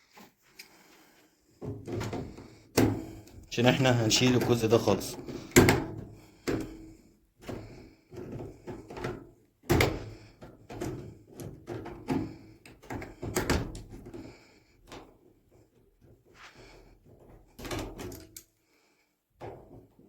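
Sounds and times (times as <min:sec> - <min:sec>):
washing machine parts clattering: 0:01.5 - 0:18.4.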